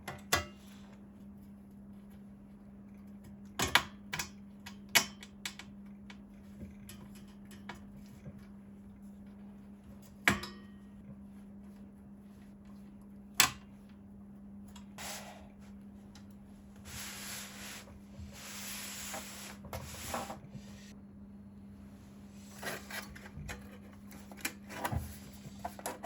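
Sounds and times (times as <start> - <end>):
rubbing and sliding parts: 16.9 - 20.9.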